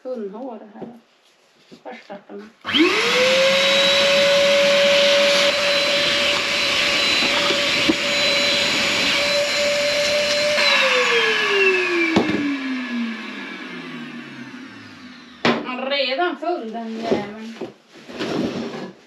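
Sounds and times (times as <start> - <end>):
vacuum motor whining: 2.6 - 15.4.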